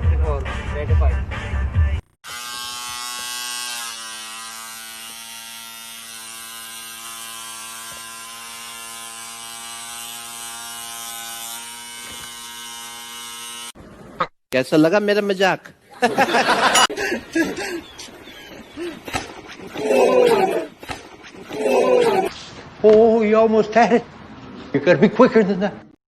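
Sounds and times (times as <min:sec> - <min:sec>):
small motor buzzing: 0:02.2 - 0:13.8.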